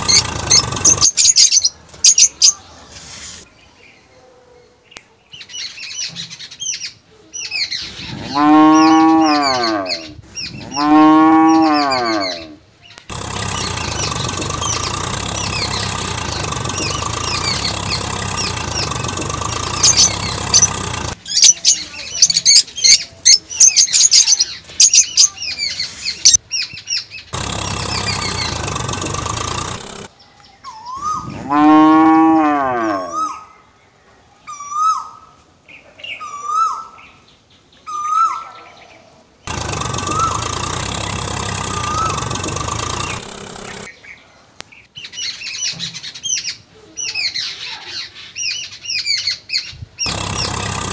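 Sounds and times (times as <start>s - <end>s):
sharp chirps and clicks: 0.0s - 2.5s, 13.1s - 23.0s, 27.4s - 30.1s, 39.5s - 43.9s, 50.1s - 50.9s
birds chirping: 0.0s - 31.8s, 39.5s - 50.9s
outdoor ambience hiss: 0.0s - 50.9s
cow mooing: 8.1s - 12.6s, 31.2s - 33.2s.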